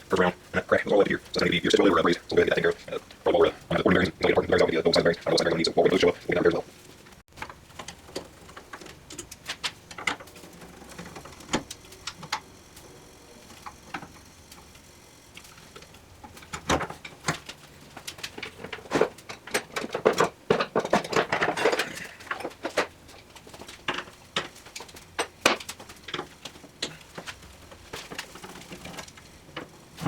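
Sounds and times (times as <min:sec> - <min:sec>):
hand tools clicking and knocking: 0:16.5 - 0:29.0.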